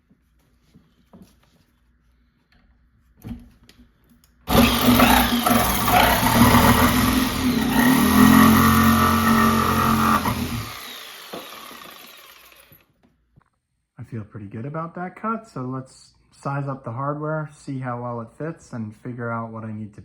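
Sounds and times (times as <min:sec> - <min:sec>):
jigsaw cutting wood: 0:04.5 - 0:12.8.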